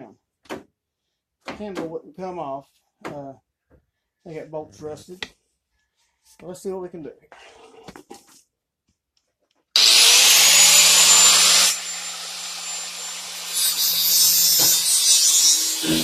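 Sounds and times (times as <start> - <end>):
power tool cutting sheet metal: 9.8 - 16.0.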